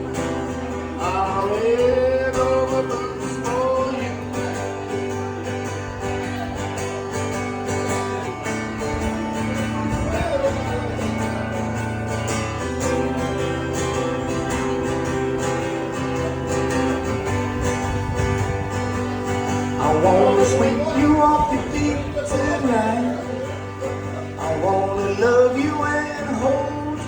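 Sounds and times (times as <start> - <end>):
strummed guitar country music: 0.0 - 27.0
person singing: 19.6 - 27.0.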